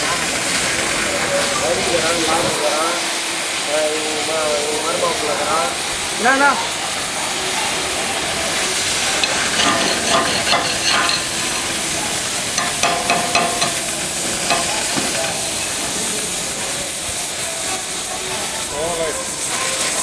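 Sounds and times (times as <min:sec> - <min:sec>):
cutting torch hissing: 0:00.0 - 0:20.0.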